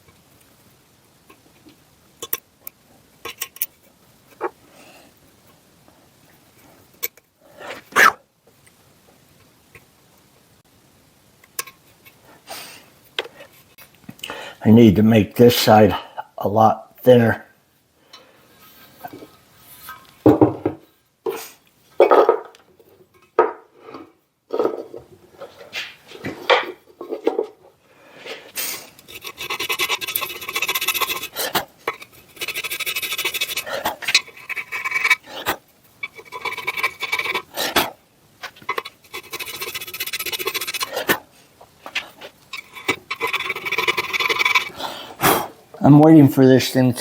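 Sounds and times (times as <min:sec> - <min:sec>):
rasping file strokes: 0:28.6 - 0:41.3, 0:41.9 - 0:44.8.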